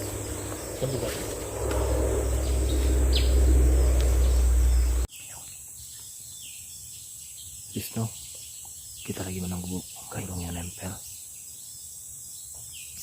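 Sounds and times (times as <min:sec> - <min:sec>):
loud low rumble: 0:00.0 - 0:05.1
insects buzzing: 0:00.0 - 0:06.6
bird calls: 0:00.0 - 0:11.8.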